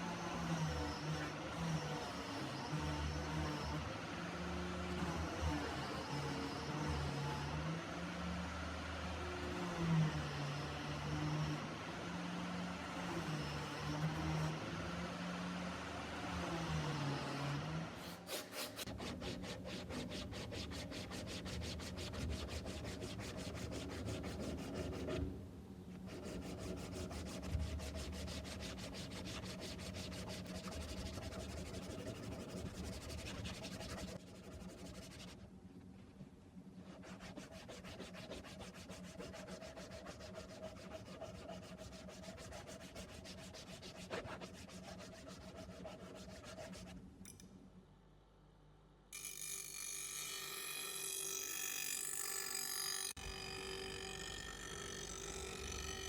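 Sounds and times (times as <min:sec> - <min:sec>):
wood being sanded: 0:18.0 - 0:25.2, 0:26.0 - 0:35.4, 0:36.8 - 0:46.9.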